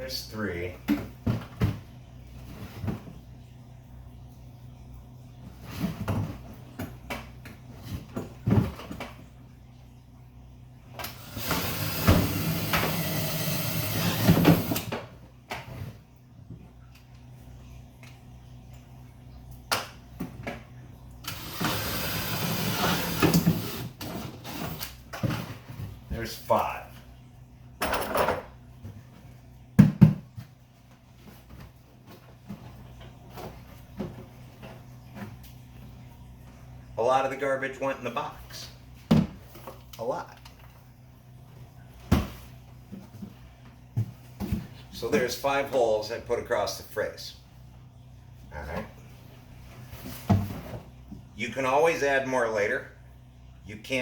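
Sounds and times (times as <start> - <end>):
power drill boring through plastic: 11.0 - 14.9, 21.3 - 25.0
hollow knocks on plastic bucket: 29.8 - 30.4.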